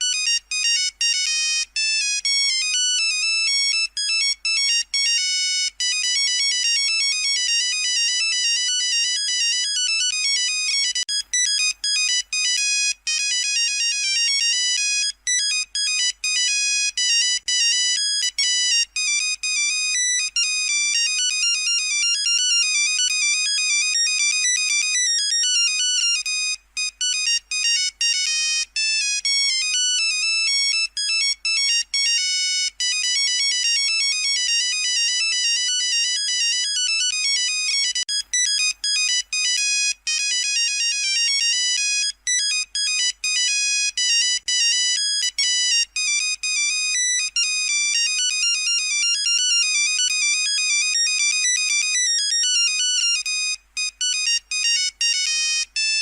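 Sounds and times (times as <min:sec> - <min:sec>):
monophonic ringtone beeps: 0:00.0 - 0:56.0.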